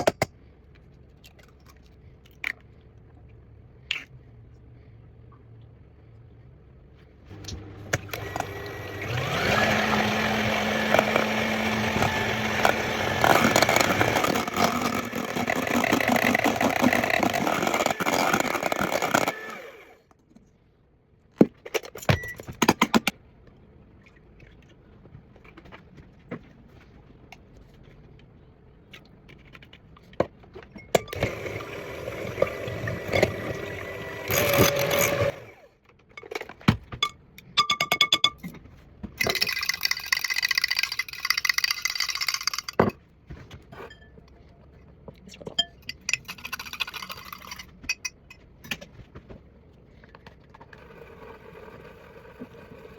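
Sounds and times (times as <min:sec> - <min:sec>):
electric mixer running: 0:07.4 - 0:20.0, 0:31.1 - 0:35.7.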